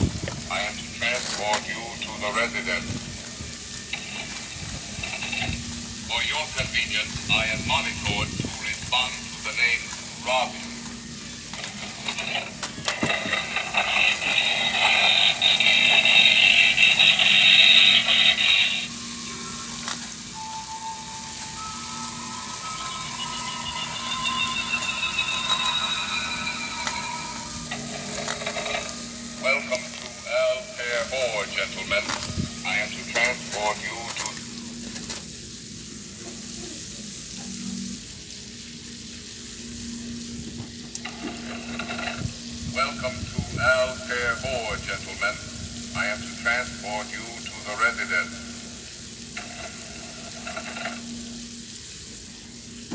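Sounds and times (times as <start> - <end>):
walking toy robot hissing and humming: 0.0 - 20.4, 22.5 - 43.6, 47.0 - 52.9
toy robot motor and gears whirring: 11.5 - 18.9.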